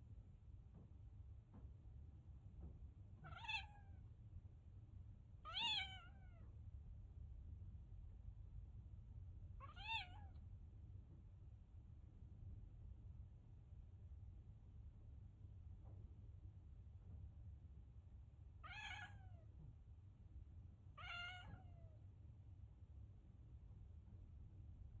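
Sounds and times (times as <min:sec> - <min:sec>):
kitten meowing: 0:03.2 - 0:04.0, 0:05.5 - 0:06.5, 0:09.6 - 0:10.4, 0:18.6 - 0:19.4, 0:21.0 - 0:21.8.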